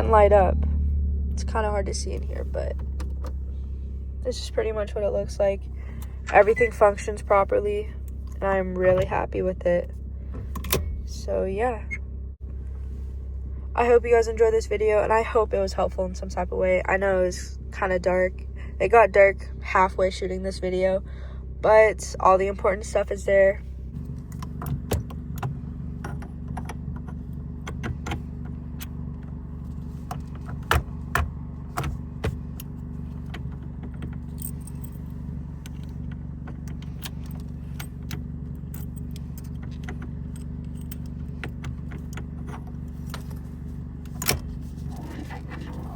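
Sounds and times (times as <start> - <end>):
car engine idling: 0.0 - 45.9
light clicks and jingles: 32.5 - 45.9.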